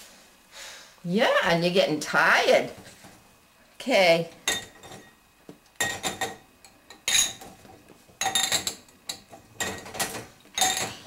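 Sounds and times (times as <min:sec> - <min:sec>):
dishes and cutlery clattering: 0:04.4 - 0:05.2, 0:05.8 - 0:11.0.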